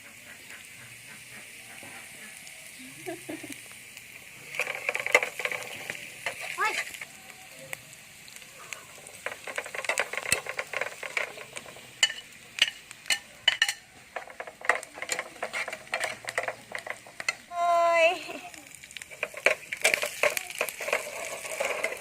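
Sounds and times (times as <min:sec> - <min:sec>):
faint sizzle: 0:00.0 - 0:22.0
utensil scraping frying pan: 0:04.3 - 0:07.1, 0:08.6 - 0:17.6, 0:18.6 - 0:22.0.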